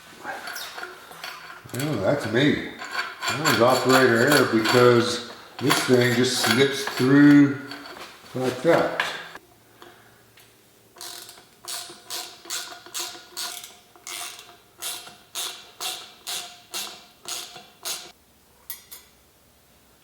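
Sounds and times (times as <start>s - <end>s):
ratchet wrench clicking: 11.0s - 18.2s.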